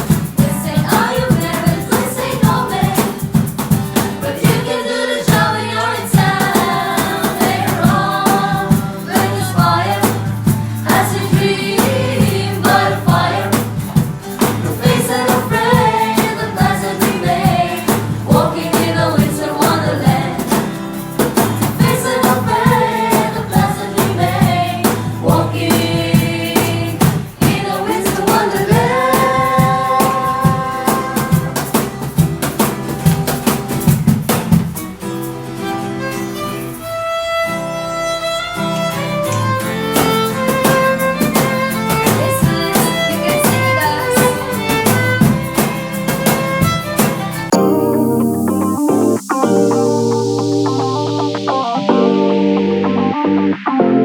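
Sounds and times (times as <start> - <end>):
group singing in harmony: 0.1 - 32.3, 41.4 - 45.4
instrumental backing with violin: 35.6 - 48.4.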